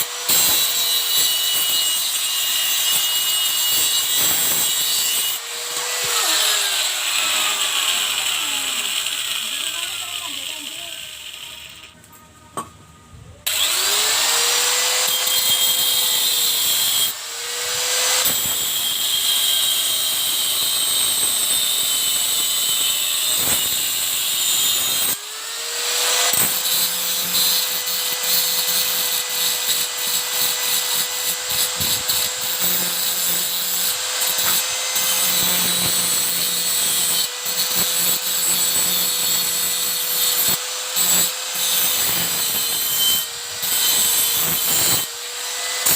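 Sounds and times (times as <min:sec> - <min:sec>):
grinding with a rasping hiss: 0:00.0 - 0:12.0, 0:25.8 - 0:45.9
power tool motor whining: 0:00.0 - 0:12.0, 0:13.4 - 0:45.9.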